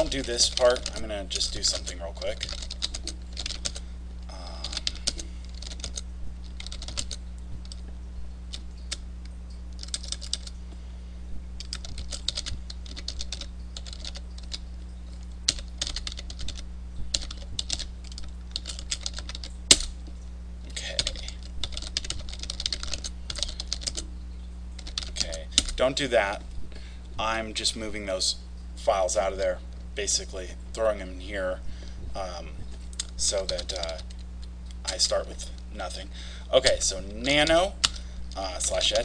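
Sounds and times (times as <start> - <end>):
keyboard typing: 0.0 - 7.8, 9.8 - 10.6, 11.6 - 14.8, 15.5 - 20.0, 20.7 - 24.1, 24.8 - 25.8
low electrical hum: 0.0 - 39.0.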